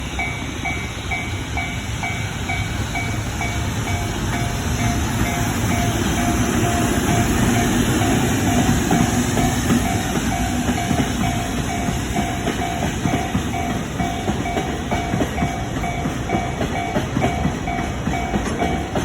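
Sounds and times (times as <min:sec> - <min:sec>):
freight train rumbling past: 0:00.0 - 0:19.0
level crossing alarm ringing: 0:00.0 - 0:19.0.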